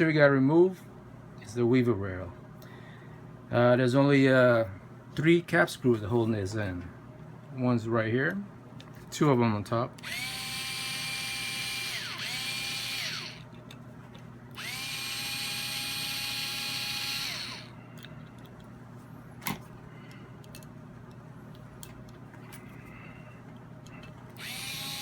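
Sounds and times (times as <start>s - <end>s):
power screwdriver motor whining: 10.0s - 13.4s, 14.6s - 17.7s, 24.4s - 25.0s.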